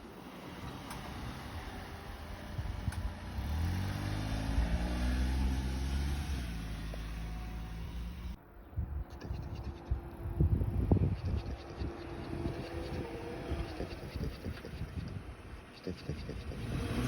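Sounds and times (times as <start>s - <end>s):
car engine passing by: 0.0s - 8.4s, 11.8s - 14.8s, 16.3s - 17.0s.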